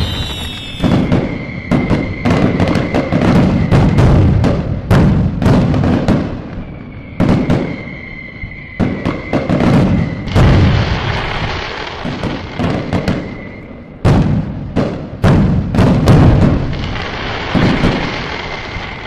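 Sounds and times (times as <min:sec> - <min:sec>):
thin steady whistle: 0:00.0 - 0:04.4, 0:06.4 - 0:11.2, 0:12.6 - 0:14.0
fireworks bursting: 0:00.0 - 0:19.0
fireworks crackle: 0:00.0 - 0:19.0.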